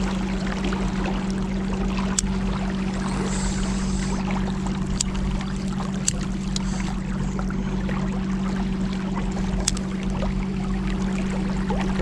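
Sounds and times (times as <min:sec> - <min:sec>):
motorboat engine running: 0:00.0 - 0:12.0
water rushing along hull: 0:00.0 - 0:12.0.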